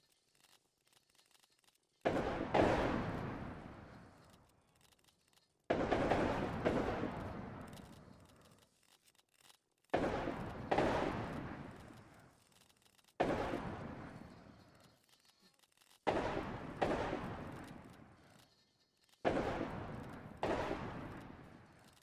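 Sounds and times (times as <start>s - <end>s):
distant musket shots echoing: 2.1s - 4.3s, 5.7s - 7.8s, 10.0s - 11.9s, 13.2s - 14.6s, 16.1s - 18.2s, 19.3s - 21.8s.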